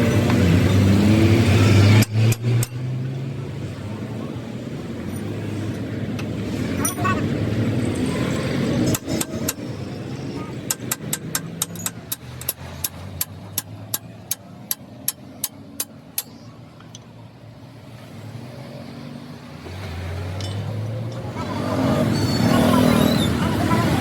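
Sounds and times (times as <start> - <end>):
hammer striking metal: 8.8 - 9.7, 10.6 - 16.5.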